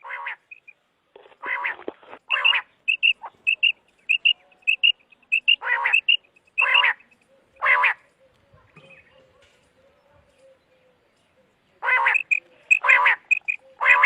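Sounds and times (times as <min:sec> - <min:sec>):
quail calling: 0:00.0 - 0:00.7, 0:01.4 - 0:09.2, 0:11.8 - 0:14.0.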